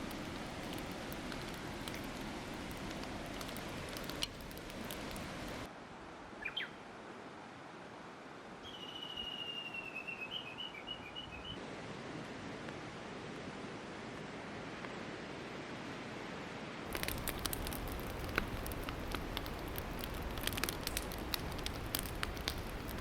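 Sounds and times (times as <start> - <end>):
crackling and ticking: 0.0 - 5.7, 16.9 - 23.0
steady hiss: 0.0 - 5.7, 16.9 - 23.0.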